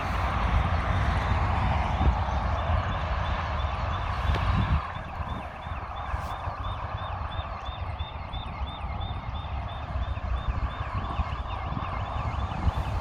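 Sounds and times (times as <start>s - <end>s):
steady low rumble: 0.0s - 13.0s
birds chirping: 3.2s - 13.0s.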